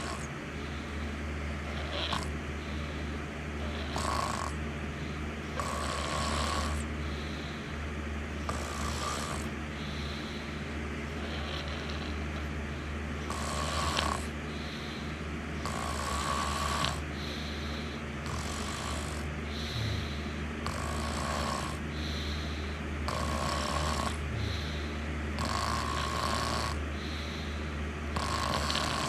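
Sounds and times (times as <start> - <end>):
person snoring: 0.0 - 4.6, 5.5 - 7.7, 8.4 - 12.5, 13.2 - 29.0
low steady hum: 0.0 - 29.0.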